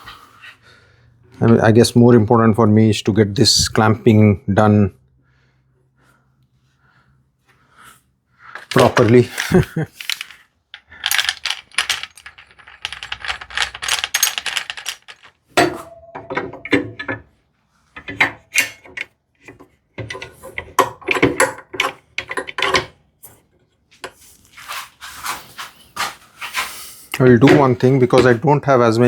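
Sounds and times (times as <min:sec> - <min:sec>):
clicks and knocks of clamps: 0:08.6 - 0:23.4.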